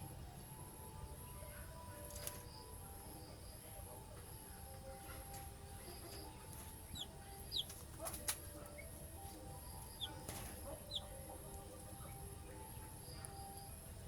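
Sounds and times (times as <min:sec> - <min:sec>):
bird chirping: 0:04.4 - 0:14.0.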